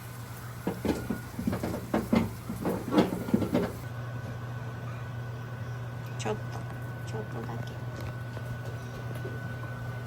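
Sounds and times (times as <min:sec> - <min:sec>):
utensil knocking against a bowl: 0:00.6 - 0:03.8.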